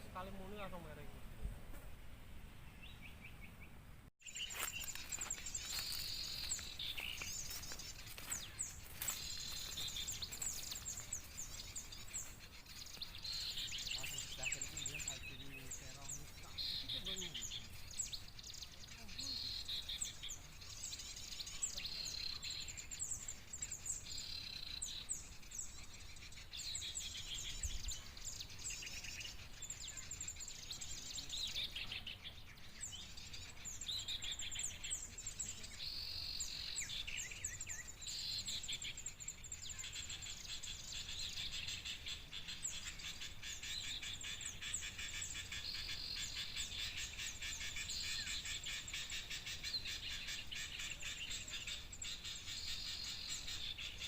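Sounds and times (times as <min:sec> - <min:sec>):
small birds chirping and twittering: 0:00.0 - 0:54.0.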